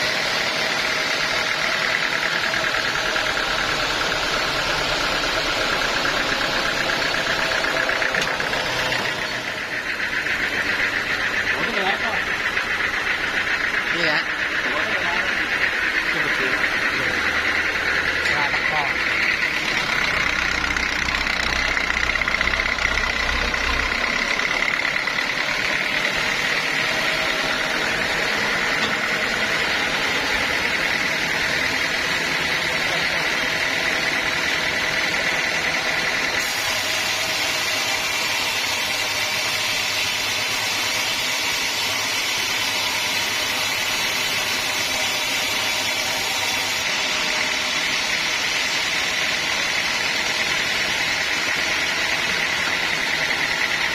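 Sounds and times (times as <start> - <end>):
sawmill machinery drone and whine: 0.0 - 53.9.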